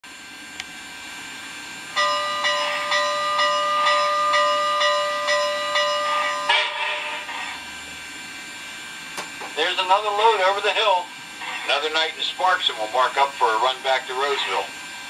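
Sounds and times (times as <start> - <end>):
steam locomotive whistle chord: 1.9 - 7.5
steam hiss: 10.5 - 15.0.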